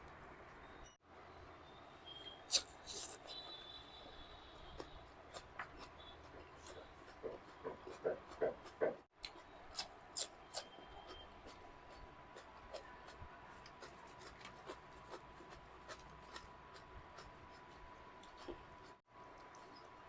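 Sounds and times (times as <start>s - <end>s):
chewing and handling food: 4.5s - 20.0s.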